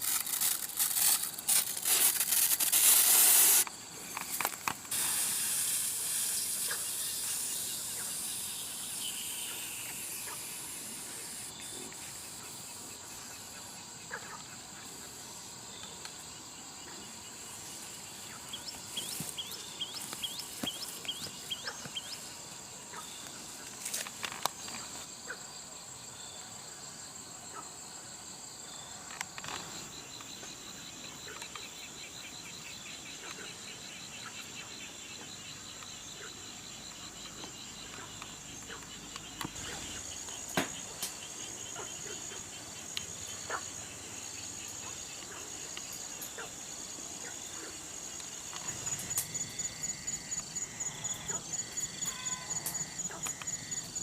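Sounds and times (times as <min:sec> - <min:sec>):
hiss: 0:00.0 - 0:13.7
high insect drone: 0:00.0 - 0:54.0.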